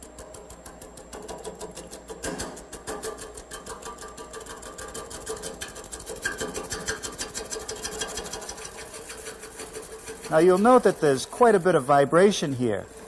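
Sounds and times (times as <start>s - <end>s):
lathe humming: 5.1s - 13.0s.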